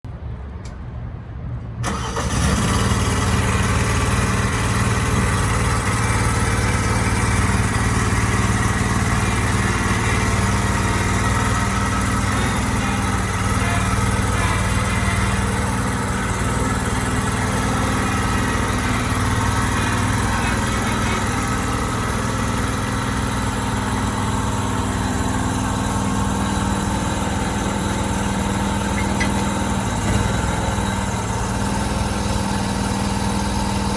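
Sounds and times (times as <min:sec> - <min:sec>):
engine starting and running: 0:01.6 - 0:33.9.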